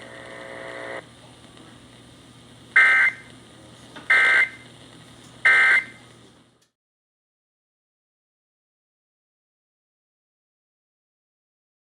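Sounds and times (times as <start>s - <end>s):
faint steady hum: 0.0s - 6.8s.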